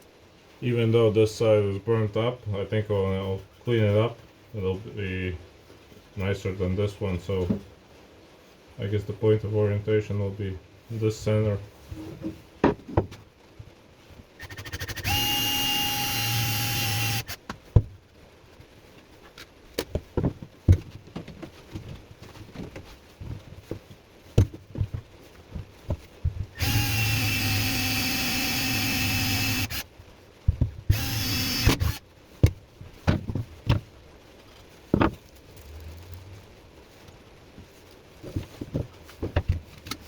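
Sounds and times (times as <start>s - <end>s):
electric drill boring into wood: 14.4s - 17.4s, 26.6s - 29.8s, 30.9s - 32.0s.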